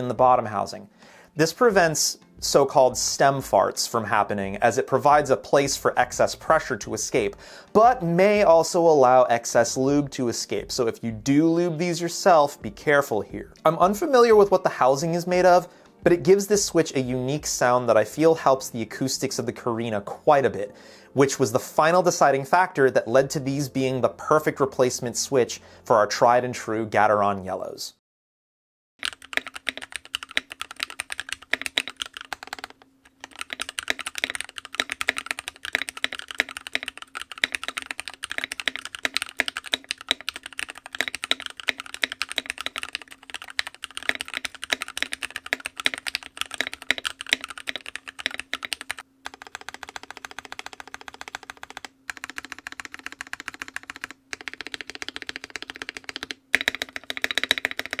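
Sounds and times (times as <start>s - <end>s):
mechanical keyboard typing: 29.0s - 58.0s.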